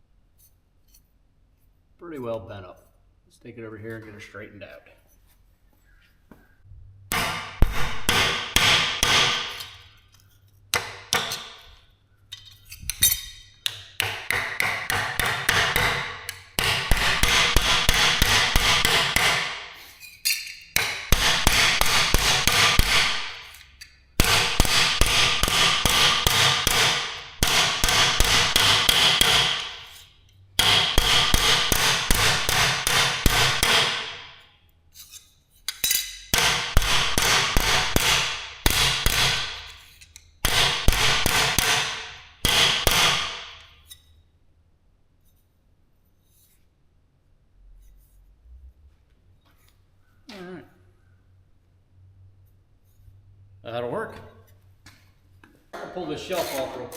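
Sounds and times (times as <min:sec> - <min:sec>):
hammer beating metal ringing: 0:24.2 - 0:29.9, 0:30.6 - 0:34.3.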